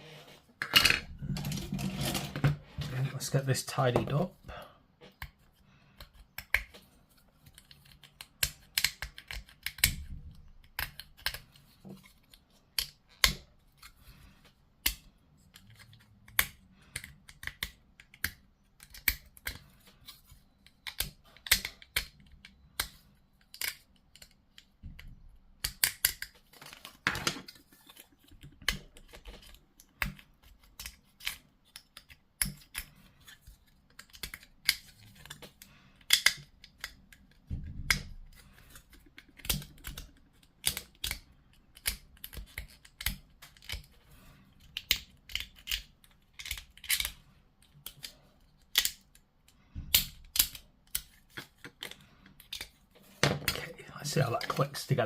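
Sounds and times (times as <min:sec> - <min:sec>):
clippers snipping plastic: 0:33.6 - 0:43.9
plastic parts knocking together: 0:52.6 - 0:53.8.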